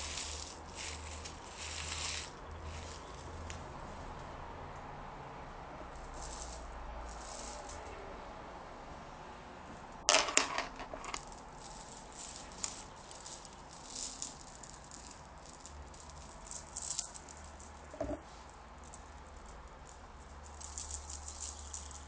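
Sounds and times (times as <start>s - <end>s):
small hard objects rattling: 0.0s - 3.5s, 5.9s - 7.8s, 10.1s - 22.0s.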